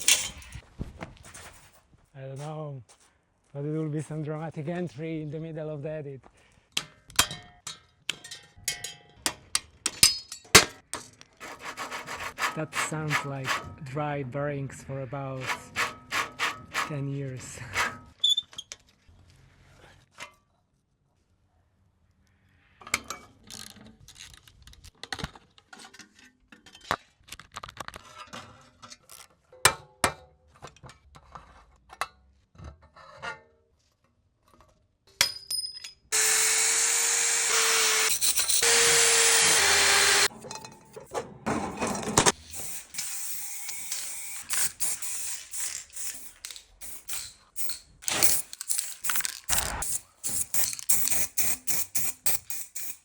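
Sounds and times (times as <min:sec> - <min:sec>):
bicycle parts clicking and rattling: 0:00.0 - 0:00.6, 0:06.7 - 0:11.4, 0:23.0 - 0:28.1, 0:41.8 - 0:53.0
power tool running: 0:36.1 - 0:40.3, 0:42.4 - 0:47.1.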